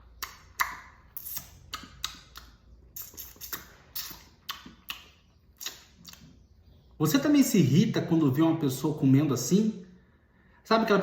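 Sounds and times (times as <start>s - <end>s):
wet open-mouthed chewing: 0.1s - 6.5s.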